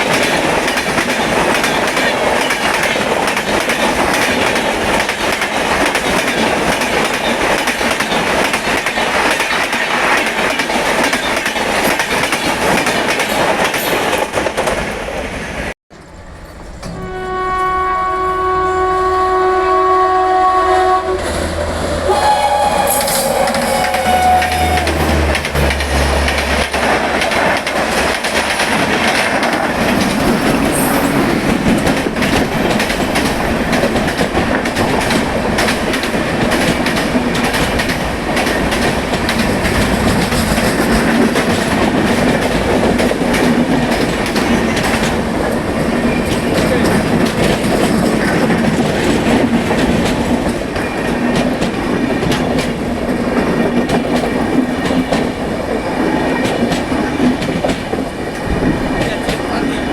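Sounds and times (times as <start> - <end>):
train wheels clattering: 0.0 - 15.2, 21.2 - 59.9
train horn: 16.9 - 27.1.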